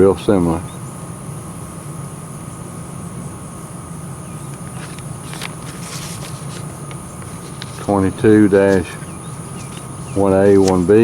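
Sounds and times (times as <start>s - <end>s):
insects buzzing: 0.0s - 11.0s
low continuous rumble: 0.0s - 11.0s
faint clicks: 4.5s - 11.0s.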